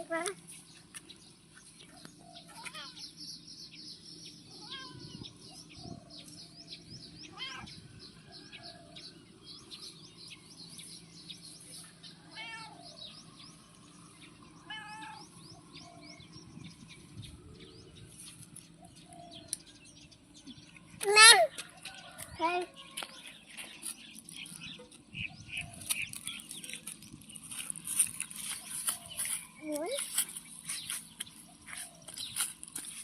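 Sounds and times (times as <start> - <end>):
cat meowing: 12.3 - 12.8, 14.7 - 15.2.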